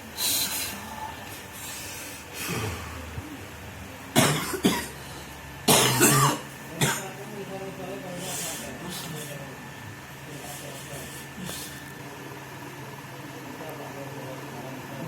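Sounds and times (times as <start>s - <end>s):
man coughing hard: 4.1s - 5.0s, 5.6s - 7.2s.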